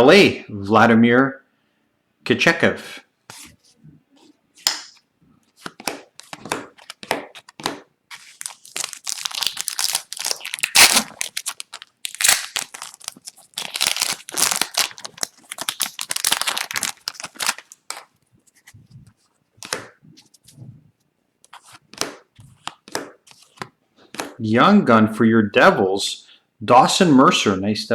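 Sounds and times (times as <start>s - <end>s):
cards being handled: 3.3s - 20.6s, 21.4s - 24.4s
foil wrapper crinkling and tearing: 6.2s - 18.2s.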